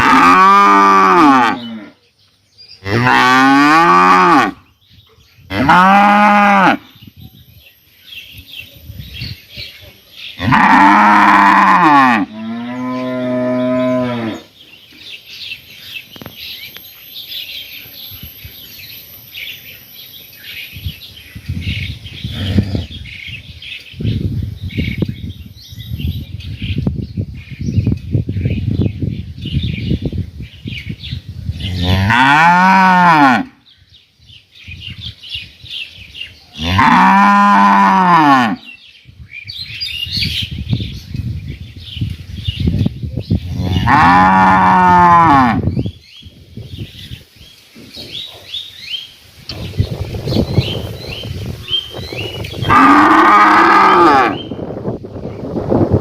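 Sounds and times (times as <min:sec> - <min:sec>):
cows mooing: 0:00.0 - 0:02.0, 0:02.8 - 0:04.6, 0:05.5 - 0:06.8, 0:10.4 - 0:14.5, 0:31.6 - 0:33.5, 0:36.6 - 0:38.7, 0:43.5 - 0:45.6, 0:52.6 - 0:54.5
quiet farmyard sounds: 0:00.0 - 0:20.6, 0:36.2 - 0:38.8, 0:42.7 - 0:45.7, 0:47.4 - 0:49.6.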